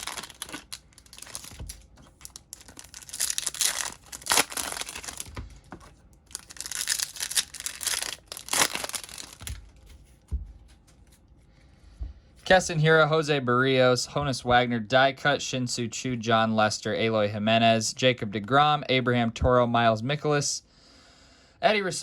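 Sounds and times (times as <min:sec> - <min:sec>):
foil wrapper tearing and crinkling: 0:00.0 - 0:05.4, 0:06.3 - 0:09.7
cards being handled: 0:00.0 - 0:11.5.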